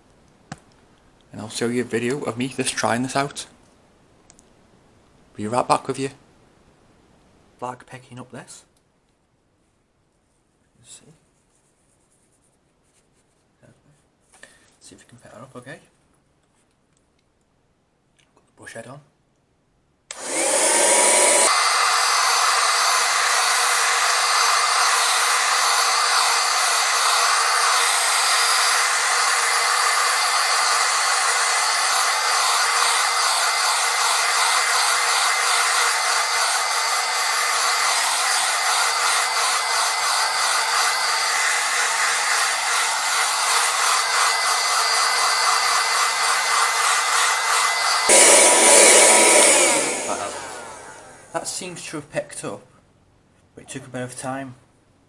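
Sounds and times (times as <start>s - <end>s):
handheld vacuum motor whine: 20.1s - 51.3s.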